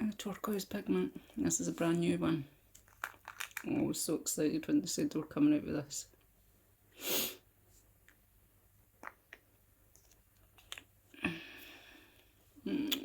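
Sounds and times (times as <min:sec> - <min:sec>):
short sharp breath: 0:07.0 - 0:07.4
person humming: 0:12.6 - 0:13.0.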